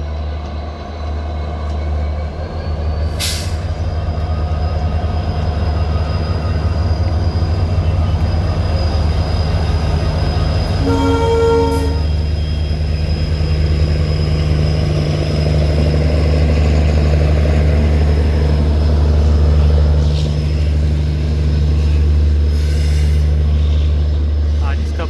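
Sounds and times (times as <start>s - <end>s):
diesel locomotive engine rumble: 0.0s - 25.0s
locomotive horn blast: 10.7s - 12.2s.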